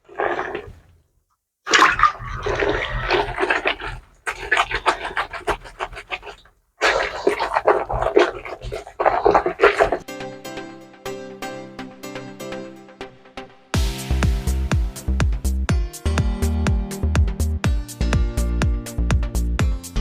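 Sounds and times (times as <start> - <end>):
water sloshing: 0.0 - 1.0, 1.7 - 10.0
wet clothes scrubbed by hand: 0.0 - 1.0, 1.7 - 10.0.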